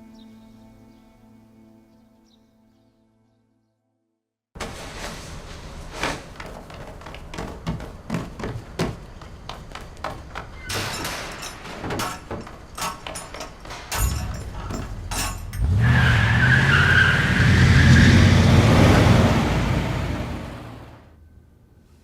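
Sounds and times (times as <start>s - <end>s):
clicks and knocks: 10.0s - 15.8s.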